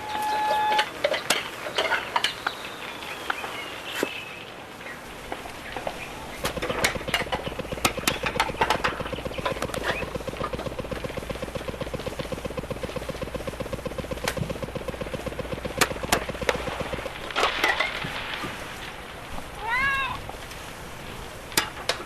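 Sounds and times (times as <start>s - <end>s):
machine pulsing and humming: 6.1s - 18.2s
sharp clicks: 6.4s - 18.2s.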